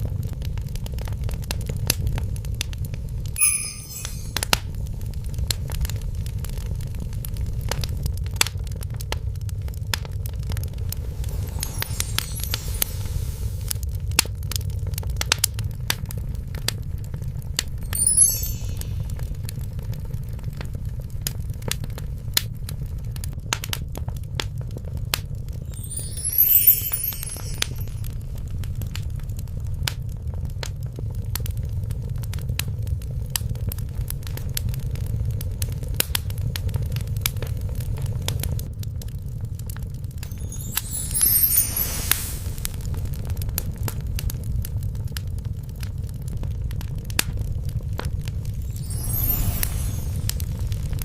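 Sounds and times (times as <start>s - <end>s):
low rumble of flames: 0.0s - 3.4s, 4.6s - 18.2s, 18.9s - 27.2s, 27.8s - 51.0s
fireplace fire crackling: 0.1s - 20.7s, 25.1s - 30.7s, 34.0s - 51.0s
bright chime-like ringing: 3.4s - 4.6s, 11.0s - 13.7s, 17.8s - 19.6s, 25.7s - 28.4s, 40.2s - 43.1s, 48.5s - 51.0s.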